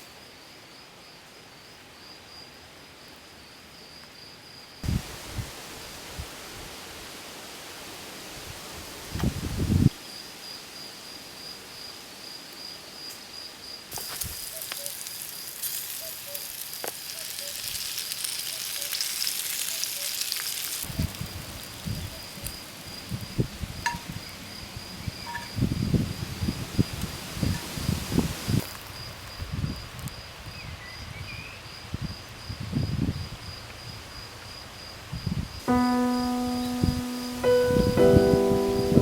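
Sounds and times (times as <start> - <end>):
food sizzling in a hot pan: 13.9 - 24.4.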